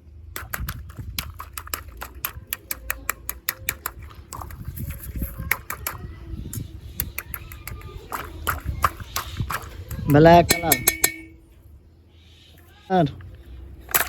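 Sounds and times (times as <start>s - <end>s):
plastic packaging clicking and crackling: 0.4s - 6.0s.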